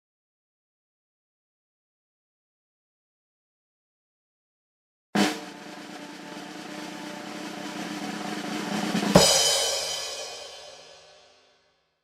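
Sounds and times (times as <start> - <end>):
snare drum roll: 5.2 - 11.4
crash cymbal hit: 5.2 - 11.5.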